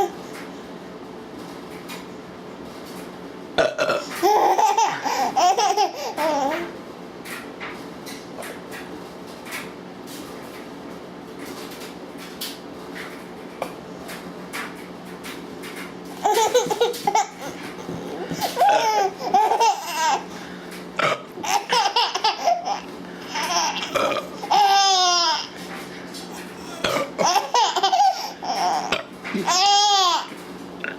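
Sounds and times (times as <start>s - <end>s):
steady hum: 0.0s - 30.9s
child laughing: 4.2s - 6.7s, 16.2s - 20.3s, 21.4s - 25.5s, 26.6s - 30.3s.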